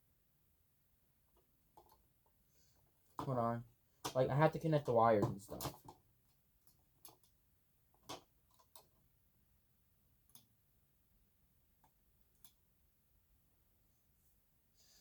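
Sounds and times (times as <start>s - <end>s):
faint clicks and taps of wires: 1.3s - 9.1s, 10.2s - 10.6s, 11.8s - 12.7s.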